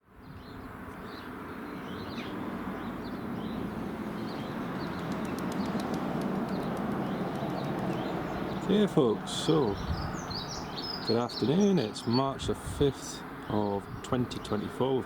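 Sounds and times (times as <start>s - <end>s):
small birds chirping: 0.1s - 15.0s
distant jet aircraft drone: 1.1s - 12.1s.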